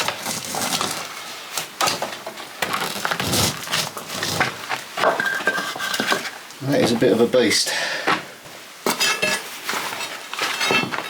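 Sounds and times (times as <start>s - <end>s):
stone scraping and crunching: 0.0s - 1.2s.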